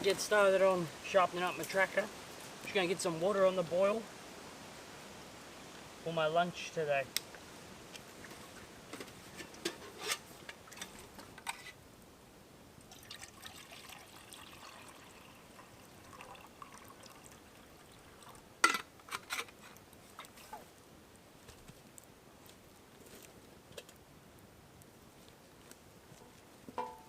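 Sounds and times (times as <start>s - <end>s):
water pouring into a pot: 12.9s - 18.6s
pot knocking and clinking: 26.8s - 27.0s.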